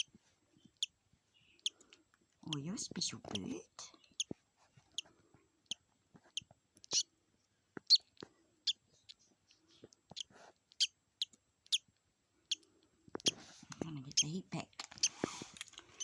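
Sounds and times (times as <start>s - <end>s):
budgerigar chirping: 0.0s - 1.8s, 2.4s - 5.1s, 5.7s - 7.1s, 7.8s - 9.1s, 10.1s - 11.9s, 14.0s - 14.4s.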